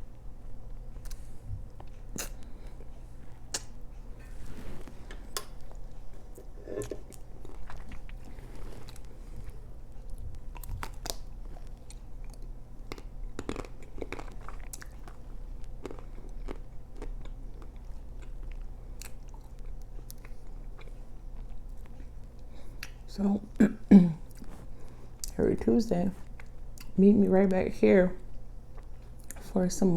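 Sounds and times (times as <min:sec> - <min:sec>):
biting and chewing ice cream: 0:04.8 - 0:23.1
chocolate shell crunching: 0:10.0 - 0:18.4.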